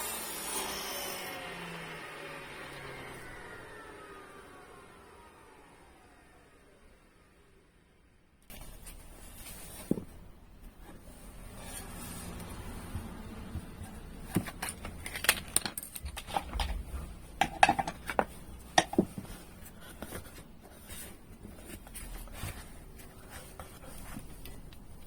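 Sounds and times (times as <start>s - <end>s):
small hard objects knocking: 14.3s - 19.2s.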